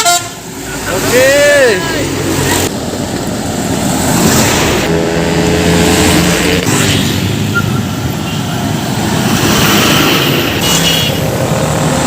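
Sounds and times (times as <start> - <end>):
heavy truck passing: 0.0 - 12.0.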